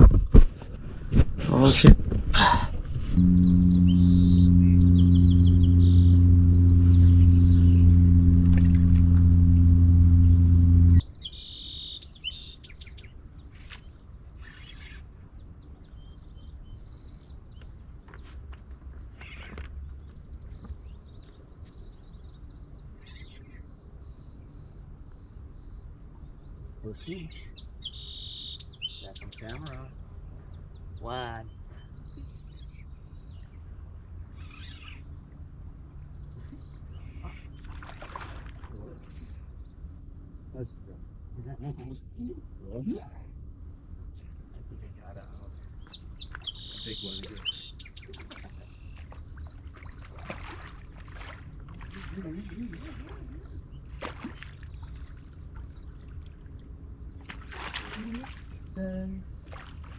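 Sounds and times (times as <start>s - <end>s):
loud low hum: 2.9s - 11.0s
faint low rumble: 3.0s - 11.0s.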